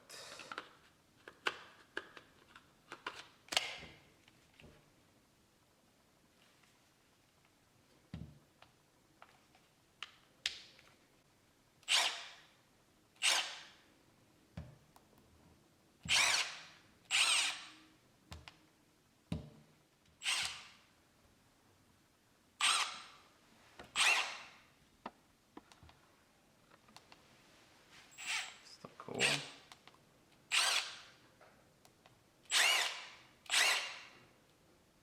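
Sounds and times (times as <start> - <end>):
impact wrench whirring bursts: 32.5 - 34.1.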